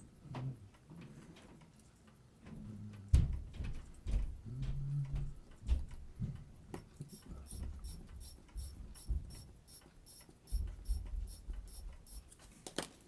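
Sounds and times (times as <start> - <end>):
ratchet clicking: 7.2 - 12.3.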